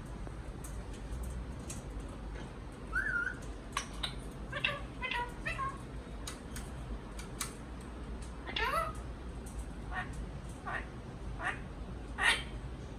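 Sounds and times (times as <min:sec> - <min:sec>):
parrot chirping calls: 0:02.9 - 0:05.9, 0:08.4 - 0:09.1, 0:09.8 - 0:12.6
parrot clicks: 0:06.2 - 0:08.4.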